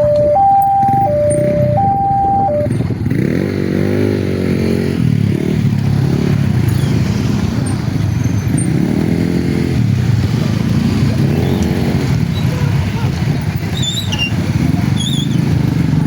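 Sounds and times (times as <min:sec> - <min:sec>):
road traffic rumble: 0:00.0 - 0:16.0
motorcycles accelerating past: 0:02.8 - 0:12.3.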